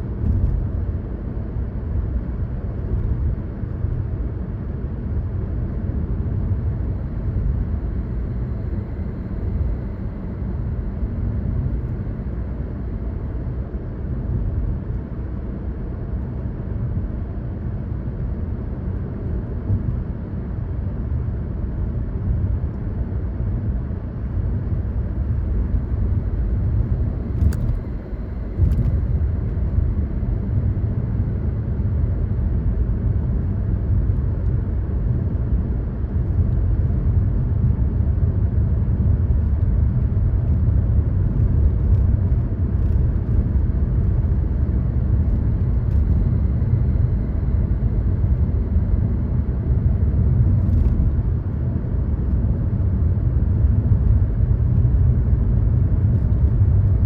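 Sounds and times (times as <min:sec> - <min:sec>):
car engine rumble: 0:00.0 - 0:57.0
tyre road noise: 0:25.1 - 0:32.4.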